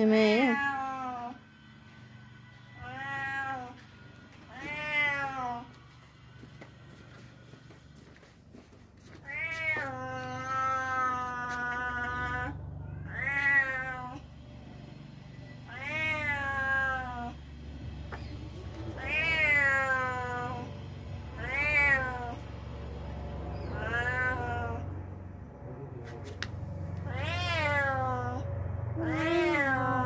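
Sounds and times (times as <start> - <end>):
cat meowing: 2.8 - 3.8, 4.5 - 5.7, 9.2 - 14.2, 15.7 - 17.4, 18.2 - 20.7, 21.4 - 22.4, 23.5 - 25.0, 27.0 - 28.4, 29.0 - 30.0.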